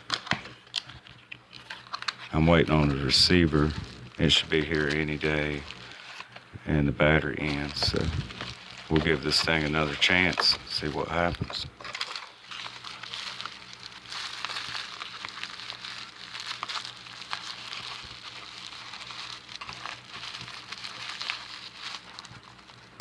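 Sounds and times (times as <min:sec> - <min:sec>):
crackling rustling with clicks: 0:00.0 - 0:23.0
low steady hum: 0:00.0 - 0:23.0.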